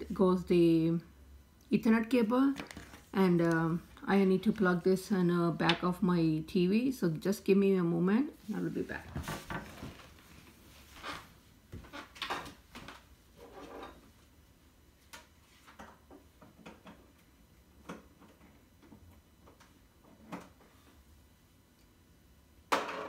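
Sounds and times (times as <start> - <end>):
objects being handled: 2.5 - 3.8.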